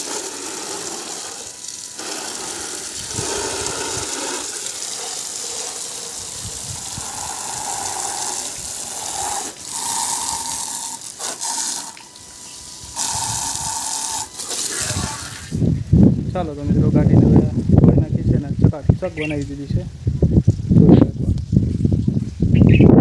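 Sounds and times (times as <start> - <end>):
water jet splashing and hissing: 0.0 - 15.8.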